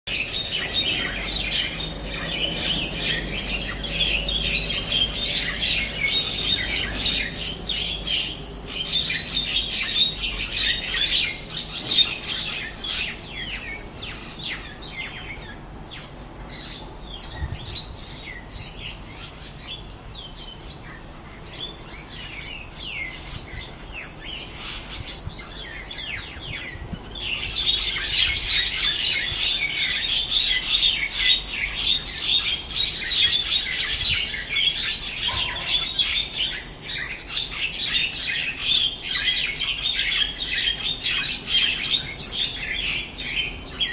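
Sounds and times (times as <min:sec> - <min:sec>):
small birds chirping and squawking: 0:00.0 - 0:43.9.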